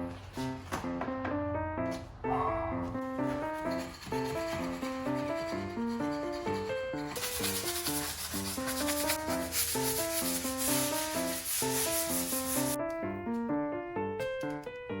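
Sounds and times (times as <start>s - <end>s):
background music: 0.0s - 15.0s
sanding: 3.2s - 12.8s.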